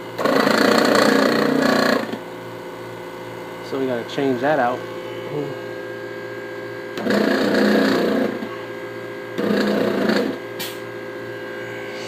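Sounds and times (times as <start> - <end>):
electrical hum: 0.0 - 12.0
pump motor rattling and grinding: 0.1 - 2.2, 6.9 - 8.5, 9.4 - 10.5.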